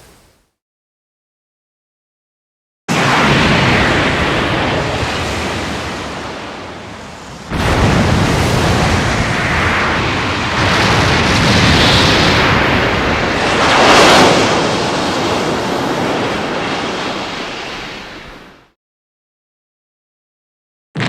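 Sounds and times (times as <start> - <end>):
surf rushing in: 0.0 - 0.4, 2.9 - 18.5
wave breaking: 2.9 - 18.6.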